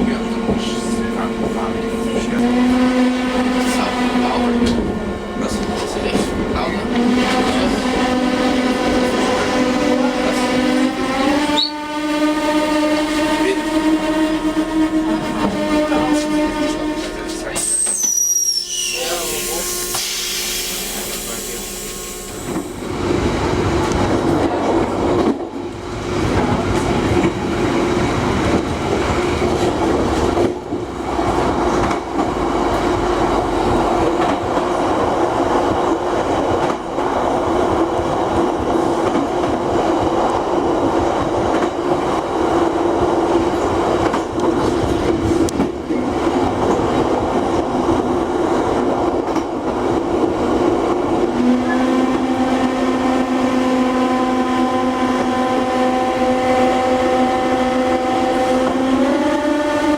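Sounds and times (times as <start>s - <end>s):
wheel and rail rumble: 0.0s - 59.9s
brakes squealing: 14.8s - 22.8s.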